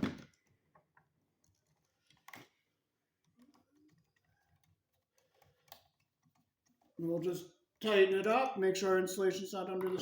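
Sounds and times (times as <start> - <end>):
faint clicks and taps on wire: 3.2 - 7.0.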